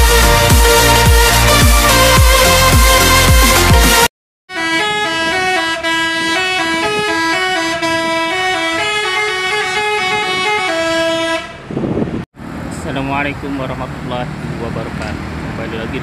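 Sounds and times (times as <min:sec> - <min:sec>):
electronic dance music: 0:00.0 - 0:04.1
bus musical air horn: 0:00.0 - 0:11.8.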